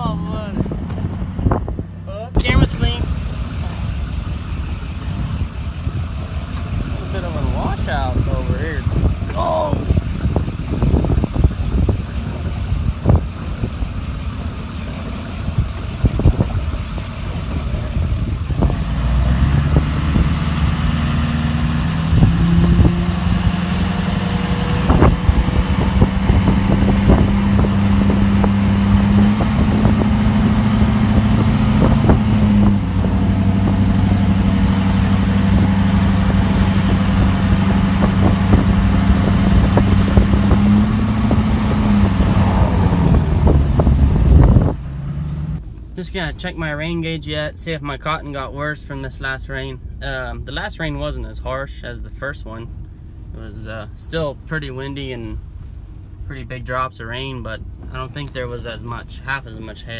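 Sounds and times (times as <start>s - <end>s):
engine pulling under load: 0.0s - 45.6s.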